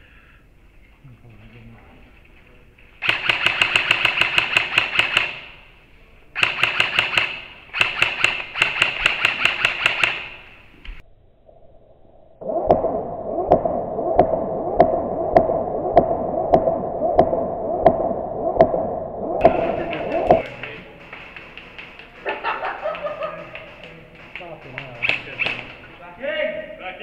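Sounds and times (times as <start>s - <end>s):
second airsoft gun firing: 3.0s - 5.6s, 6.4s - 10.6s
airsoft gun bursts: 3.0s - 5.7s, 6.4s - 10.7s.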